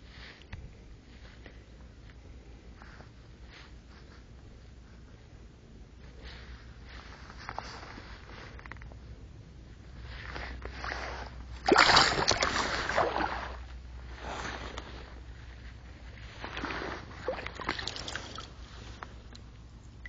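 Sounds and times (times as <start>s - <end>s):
water splashing: 10.7s - 13.7s, 16.4s - 19.0s.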